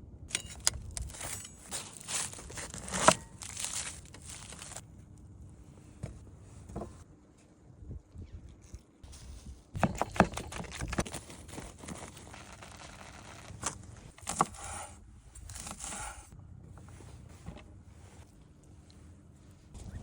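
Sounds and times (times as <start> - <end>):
scraping crinkling rustle: 0.8 - 4.8, 10.7 - 19.9.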